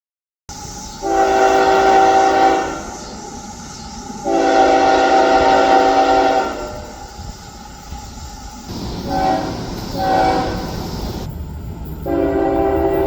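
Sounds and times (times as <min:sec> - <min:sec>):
passing train noise: 0:00.5 - 0:13.0
locomotive air horn blasts: 0:01.0 - 0:02.9, 0:04.2 - 0:06.9, 0:08.7 - 0:11.3, 0:12.1 - 0:13.0.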